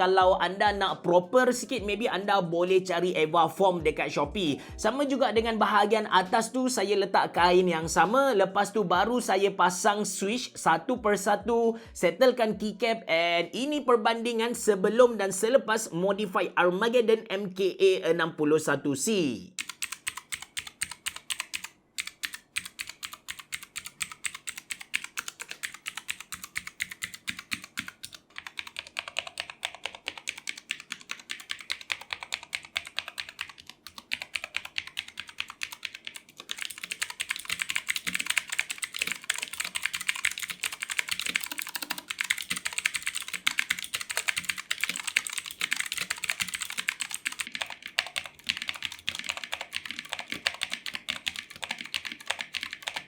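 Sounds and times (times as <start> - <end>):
mechanical keyboard typing: 19.6 - 53.0.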